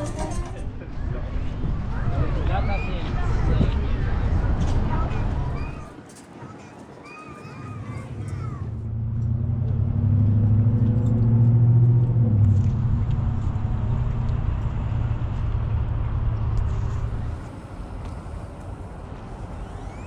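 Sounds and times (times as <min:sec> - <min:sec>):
passing vehicle engine hum: 0:08.1 - 0:20.0.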